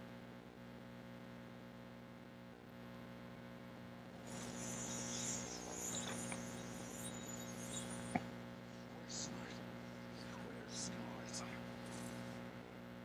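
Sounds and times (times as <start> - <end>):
electrical mains hum: 0.0 - 13.0
faint high hiss: 4.1 - 12.6.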